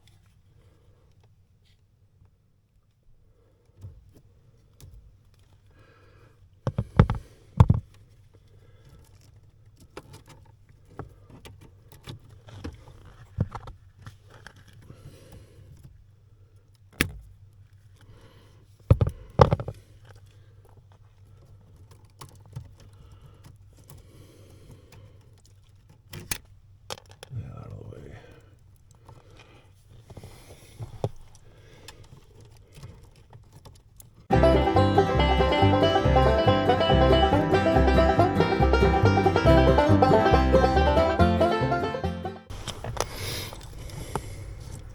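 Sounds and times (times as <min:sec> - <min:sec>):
clicks and rattles of parts: 0:03.7 - 0:05.8, 0:06.6 - 0:27.3, 0:28.4 - 0:34.3
low steady hum: 0:42.5 - 0:44.9.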